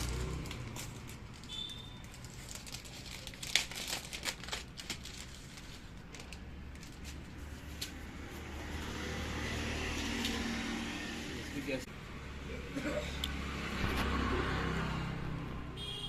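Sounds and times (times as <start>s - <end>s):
plastic packaging crinkling: 0.4s - 7.4s.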